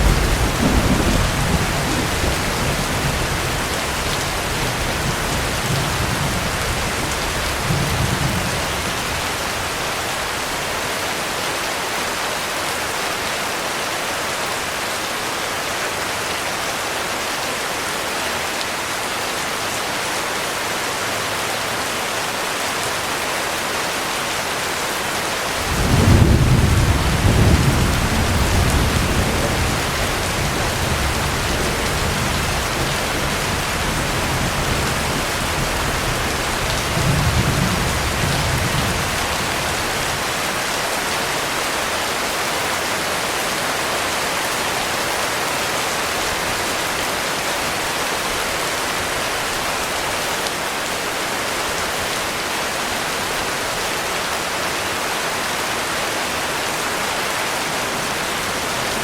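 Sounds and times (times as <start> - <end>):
thunder rumbling: 0.0 - 9.4, 25.6 - 40.2
heavy rain falling: 0.0 - 59.0.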